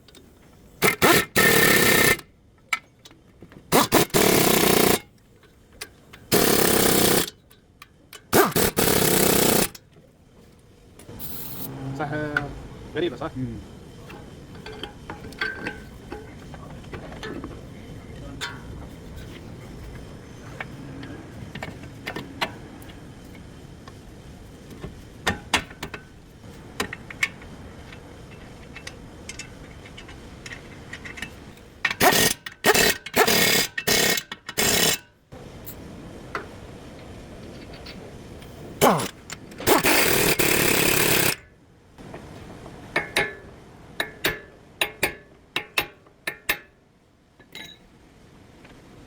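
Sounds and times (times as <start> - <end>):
power tool bursts: 0.8 - 2.2, 3.7 - 5.1, 6.3 - 7.4, 8.3 - 9.8, 32.0 - 35.0, 38.8 - 41.4
metal tools clicking and knocking: 28.6 - 35.0, 38.8 - 41.4, 44.0 - 46.8, 47.4 - 47.9.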